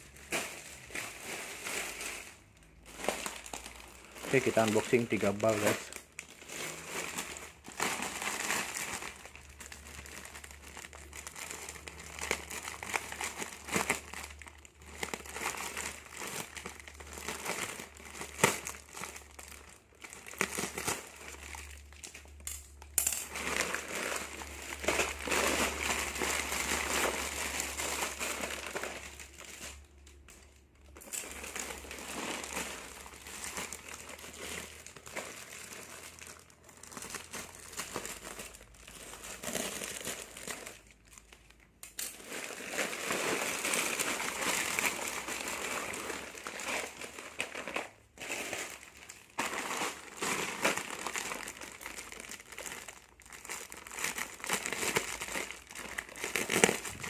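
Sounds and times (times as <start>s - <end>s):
plastic packaging crinkling: 0.0s - 57.0s.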